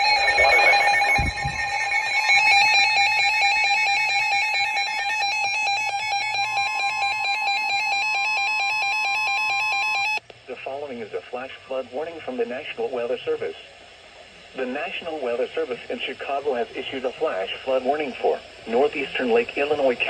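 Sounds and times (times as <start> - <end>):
electronic alarm pulsing beeps: 0.0 - 10.2
steady warning tone: 0.0 - 10.2, 14.6 - 20.0.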